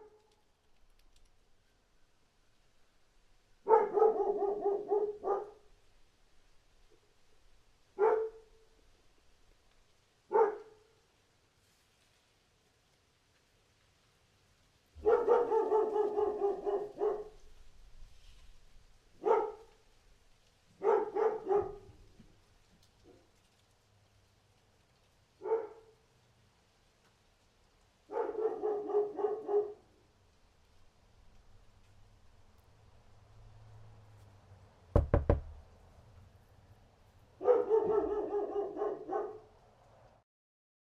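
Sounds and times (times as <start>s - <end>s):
dog barking: 3.6s - 5.7s, 8.0s - 8.6s, 10.3s - 11.0s, 15.0s - 17.4s, 19.2s - 19.8s, 20.8s - 22.0s, 25.4s - 26.0s, 28.1s - 29.9s, 37.4s - 39.5s
sharp knocks: 35.0s - 35.6s.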